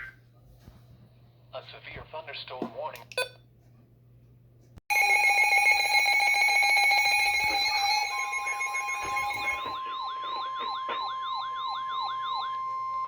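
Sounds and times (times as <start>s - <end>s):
steady alert tone: 4.9s - 10.8s
rapidly pulsing alarm: 4.9s - 13.0s.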